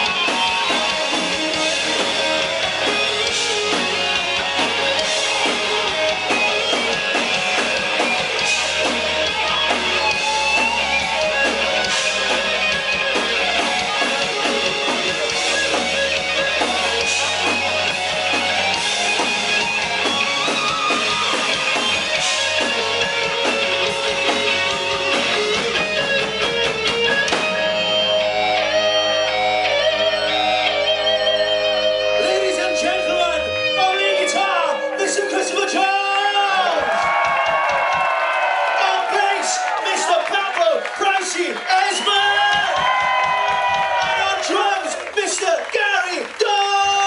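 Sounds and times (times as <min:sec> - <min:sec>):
held guitar notes ringing: 0:00.0 - 0:36.7
rock band playing live: 0:00.0 - 0:47.0.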